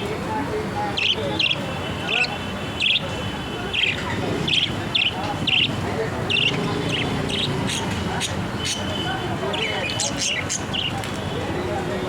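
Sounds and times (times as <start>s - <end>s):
background murmur: 0.0s - 12.0s
small bird chirping: 1.0s - 3.1s, 3.7s - 11.0s.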